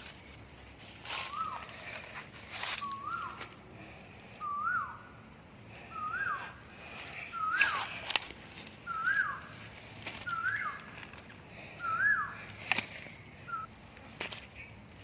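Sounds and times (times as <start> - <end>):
whistled call: 1.2 - 1.7, 2.7 - 3.4, 4.4 - 5.2, 5.8 - 6.6, 7.2 - 8.0, 8.8 - 9.6, 10.2 - 11.0, 11.8 - 12.5, 13.1 - 13.7.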